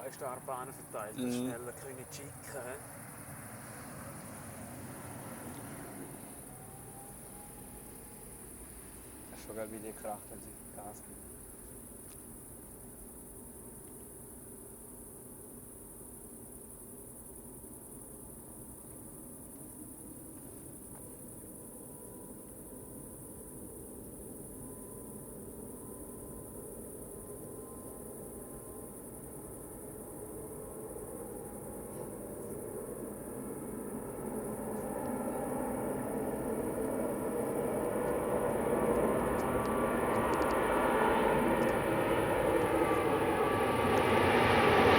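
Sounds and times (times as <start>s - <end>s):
jet engines powering up: 0.0s - 8.6s
faint whine: 0.0s - 14.7s, 18.8s - 44.9s
crickets chirping: 0.0s - 44.9s.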